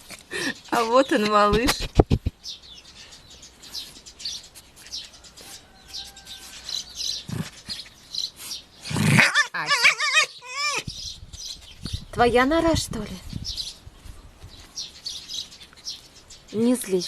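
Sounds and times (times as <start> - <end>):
young animal warbling cry: 8.9 - 10.9.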